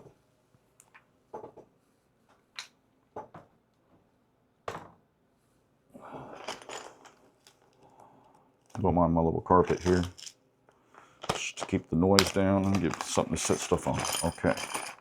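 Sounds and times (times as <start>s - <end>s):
rustling: 6.2s - 7.8s, 9.6s - 15.0s
small objects knocking and clicking: 6.2s - 7.8s, 9.6s - 15.0s.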